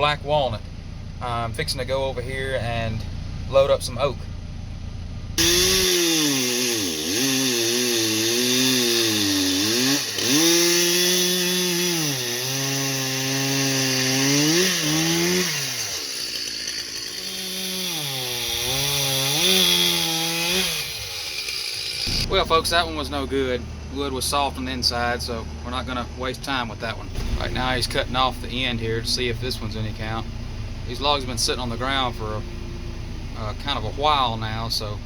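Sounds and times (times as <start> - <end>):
chainsaw cutting log: 5.4 - 30.2.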